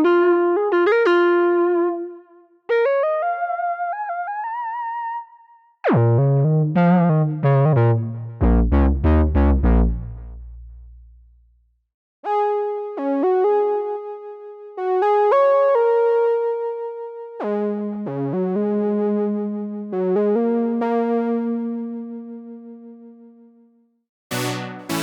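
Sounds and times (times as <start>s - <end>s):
synthesizer sustained notes: 24.3s - 25.0s.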